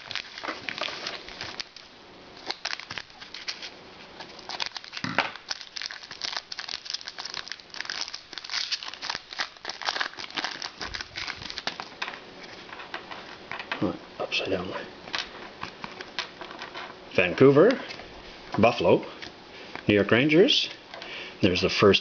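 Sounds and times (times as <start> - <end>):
card pack wrappers crinkling: 0.0 - 13.3.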